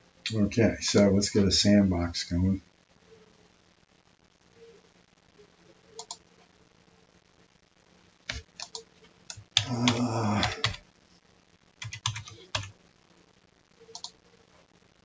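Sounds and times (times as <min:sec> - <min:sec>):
typing on computer keyboard: 0:08.3 - 0:10.8, 0:11.8 - 0:12.7, 0:13.9 - 0:14.2.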